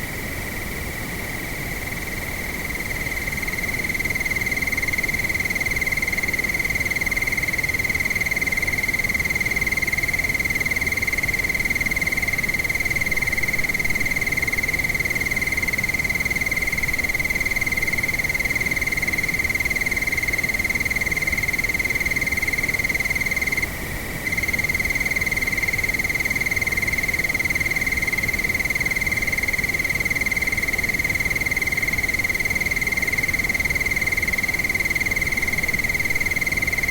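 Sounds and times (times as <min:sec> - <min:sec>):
crickets trilling: 0:00.0 - 0:36.9
windy hiss: 0:00.0 - 0:36.9.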